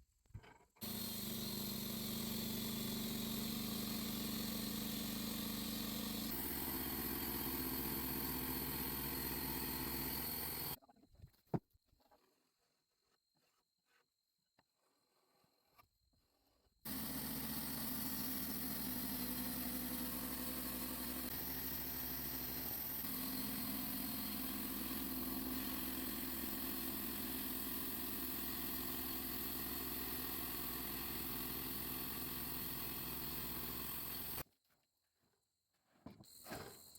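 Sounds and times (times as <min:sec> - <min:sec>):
engine running steadily: 0:00.8 - 0:10.8, 0:16.9 - 0:34.4.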